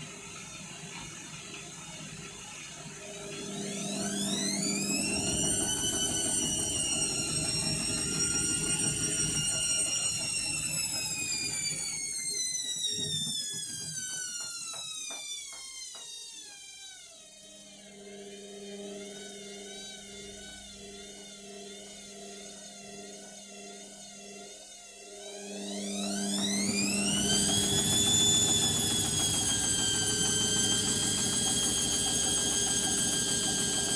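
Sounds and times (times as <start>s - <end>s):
washing machine motor whine: 0.0s - 23.2s, 24.2s - 33.9s
washing machine drum knocking: 26.3s - 33.9s.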